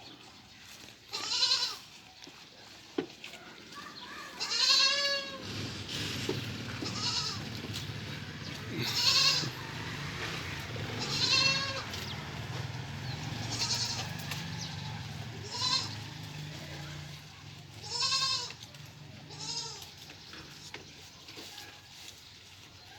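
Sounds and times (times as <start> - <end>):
goats bleating: 1.1 - 2.0, 3.2 - 20.6.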